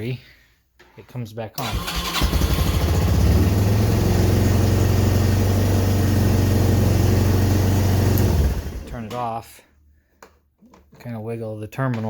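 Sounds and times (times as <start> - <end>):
atv engine idling: 1.6 - 9.0.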